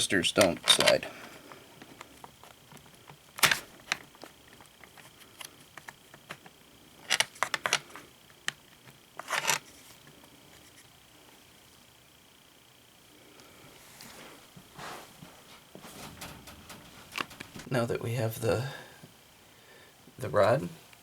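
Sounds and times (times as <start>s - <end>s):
pliers and metal rod clattering: 0.4s - 1.0s.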